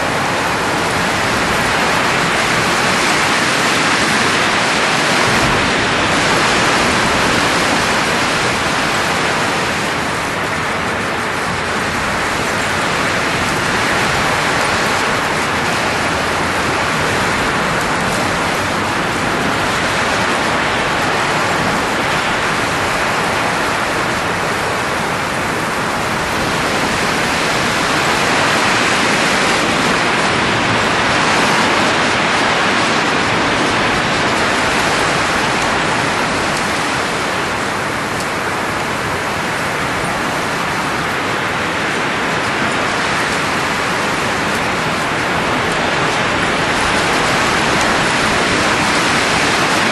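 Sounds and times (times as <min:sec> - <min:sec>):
rush of air blowing: 0:00.0 - 0:49.9.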